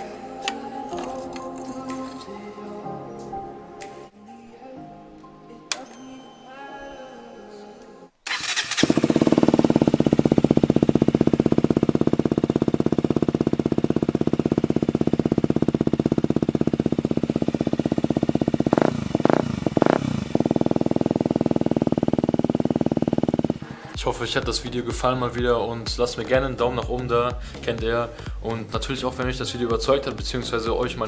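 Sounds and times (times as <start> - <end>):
motorcycle engine idling: 8.3 - 31.0.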